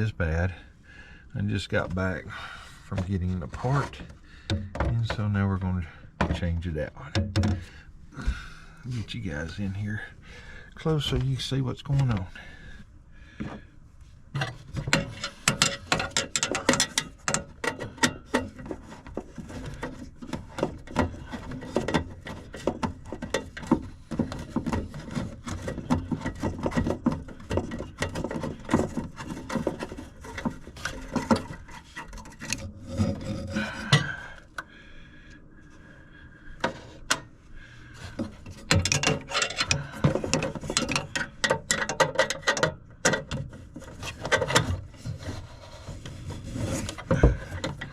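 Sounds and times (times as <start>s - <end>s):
rubbing and scraping: 1.4s - 12.8s, 13.4s - 34.6s, 36.5s - 47.9s
hands handling tools and parts: 1.5s - 10.0s, 10.7s - 12.6s, 13.4s - 34.7s, 36.6s - 47.9s
clicks and knocks: 6.2s - 7.7s, 14.4s - 34.2s, 38.1s - 44.8s.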